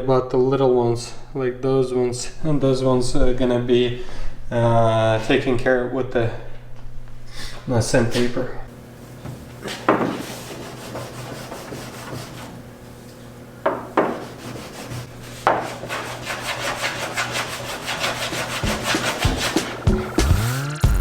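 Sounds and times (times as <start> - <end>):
sanding block rubbing on paint: 9.4 - 13.0, 13.7 - 20.6.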